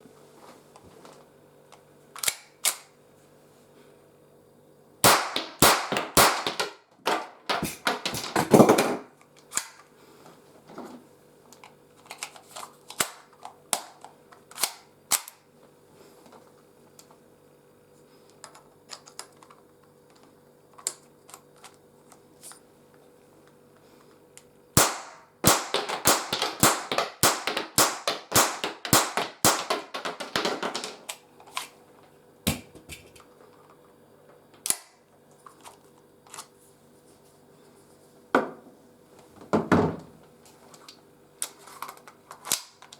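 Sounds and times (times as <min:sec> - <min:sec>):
silenced pistol cracks: 0:05.0 - 0:06.7, 0:24.8 - 0:30.4.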